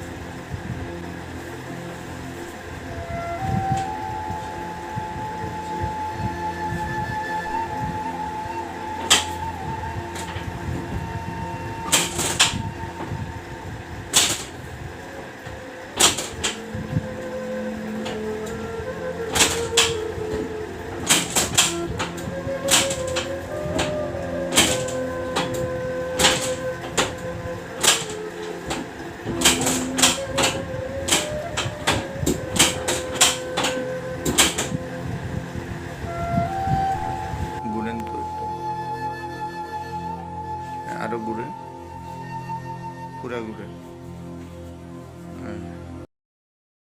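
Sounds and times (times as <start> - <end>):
soft sustained background tones: 0.0 - 46.0
steady hum: 0.0 - 46.0
sharp clacks of adjustment: 9.0 - 9.4, 14.1 - 14.6, 16.0 - 16.7, 19.3 - 34.8.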